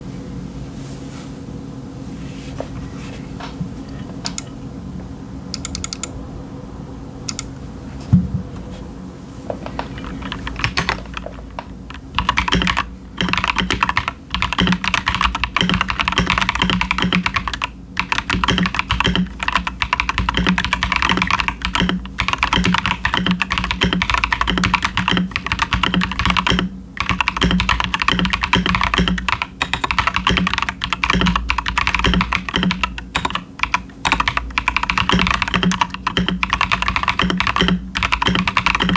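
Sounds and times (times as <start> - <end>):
mechanical keyboard typing: 4.2 - 4.5, 5.6 - 6.2, 7.3 - 7.5, 9.9 - 38.9.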